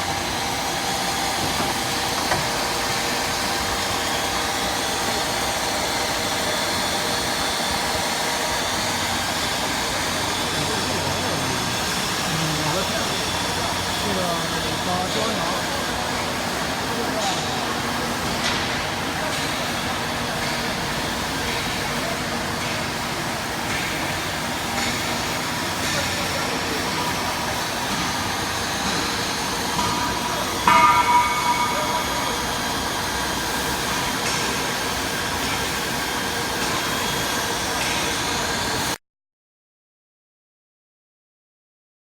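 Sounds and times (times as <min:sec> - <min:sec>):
workshop machine noise: 0:00.0 - 0:39.0
ringing metal clang: 0:30.6 - 0:33.1.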